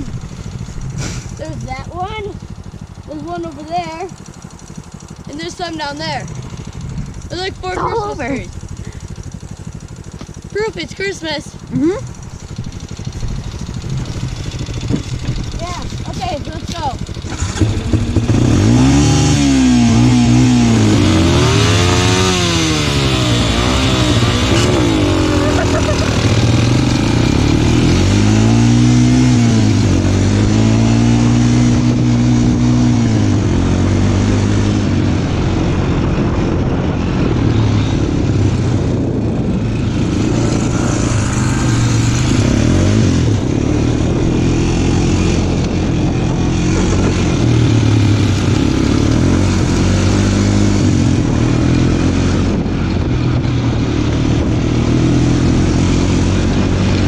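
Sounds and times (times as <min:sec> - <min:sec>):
off-road vehicle engine revving: 0:00.0 - 0:57.0
wind noise: 0:12.0 - 0:57.0.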